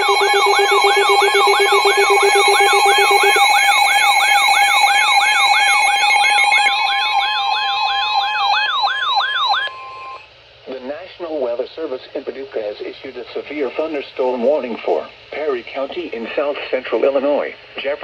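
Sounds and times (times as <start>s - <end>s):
pulsing low beep: 0.0s - 10.2s
held steady tones: 0.0s - 10.3s
sweeping alarm tone: 0.0s - 10.3s.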